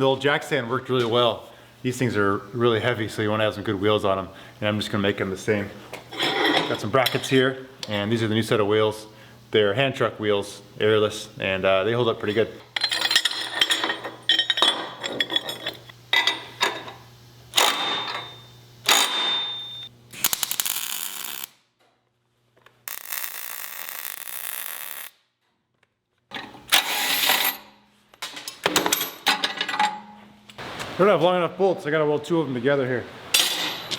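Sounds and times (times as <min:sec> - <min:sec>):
steel parts clanking: 0:12.3 - 0:17.0, 0:17.6 - 0:19.8.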